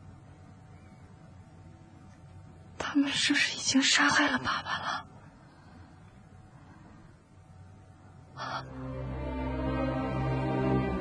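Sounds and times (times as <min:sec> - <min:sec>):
low background rumble: 0:00.0 - 0:11.0
sombre music with low tones: 0:08.2 - 0:11.0.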